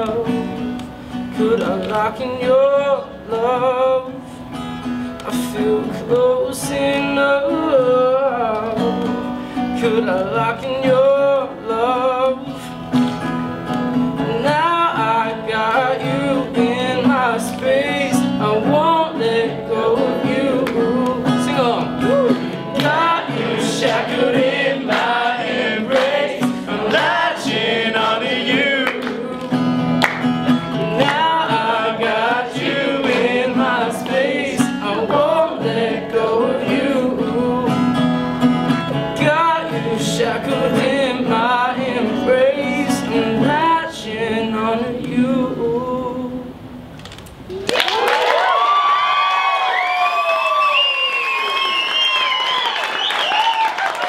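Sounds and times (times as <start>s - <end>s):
guitar accompaniment: 0.0s - 47.7s
person singing: 5.2s - 12.5s, 14.2s - 29.6s, 30.8s - 37.8s.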